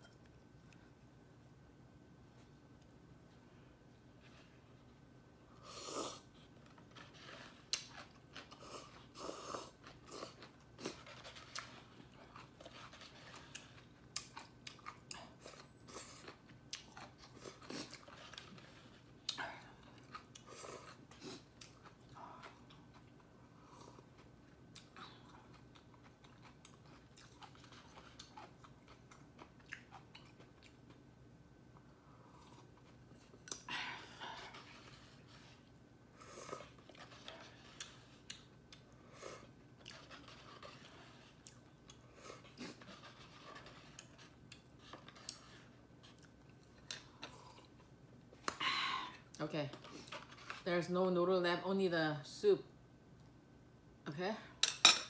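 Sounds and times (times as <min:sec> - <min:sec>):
person chewing: 0:05.7 - 0:31.0, 0:32.0 - 0:50.6.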